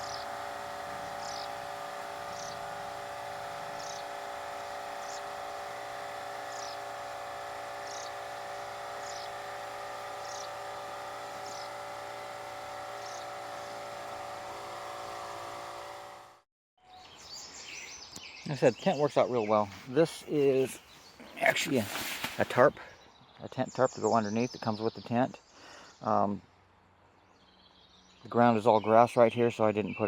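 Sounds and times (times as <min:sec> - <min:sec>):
steady droning hum: 0:00.0 - 0:16.3.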